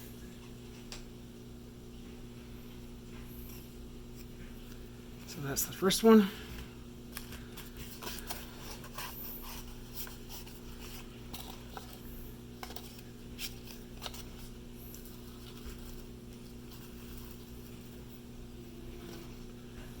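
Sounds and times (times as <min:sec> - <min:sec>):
steady low hum: 0:00.0 - 0:20.0
packaging rustling: 0:07.1 - 0:18.2.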